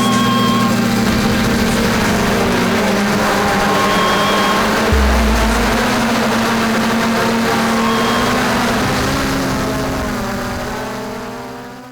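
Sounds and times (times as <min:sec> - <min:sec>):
low rumble: 0:04.9 - 0:06.5.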